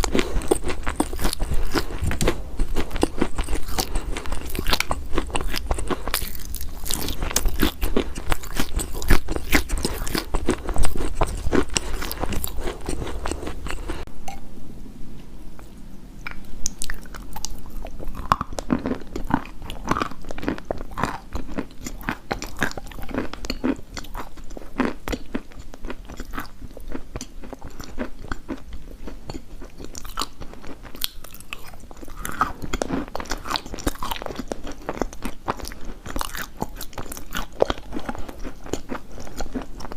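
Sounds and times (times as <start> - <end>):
person chewing crunchy chalk: 0.0 - 14.1, 16.3 - 39.9
low hum: 12.2 - 18.4.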